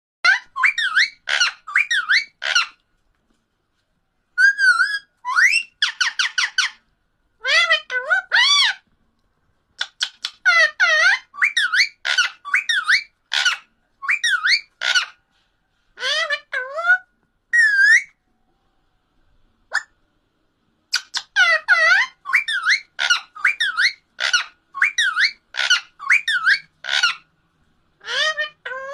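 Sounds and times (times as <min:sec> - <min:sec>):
parrot whistling: 0:17.6 - 0:18.2, 0:20.9 - 0:27.2.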